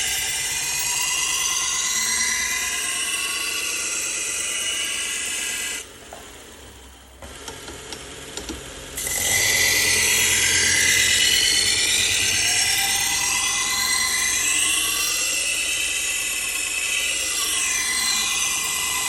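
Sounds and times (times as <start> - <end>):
belt grinder running: 9.0 - 19.0.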